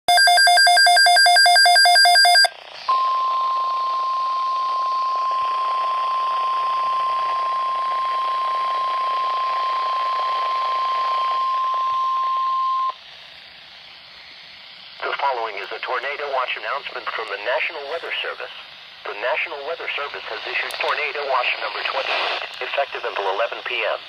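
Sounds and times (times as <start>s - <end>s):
steady alarm tone: 0.1s - 13.0s
warbling electronic data tones: 0.1s - 24.0s.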